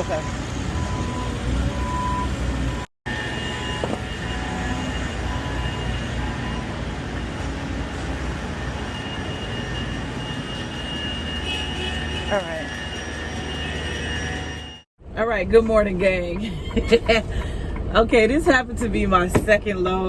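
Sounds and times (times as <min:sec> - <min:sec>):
diesel truck engine idling: 0:15.0 - 0:20.0.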